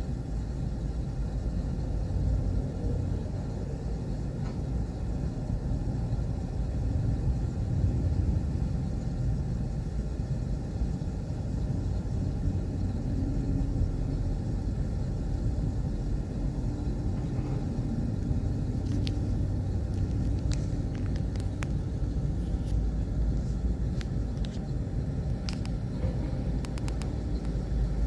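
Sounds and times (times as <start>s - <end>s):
excavator diesel engine rumbling: 0.0s - 28.0s
sharp clicks: 19.9s - 21.9s, 25.3s - 27.6s.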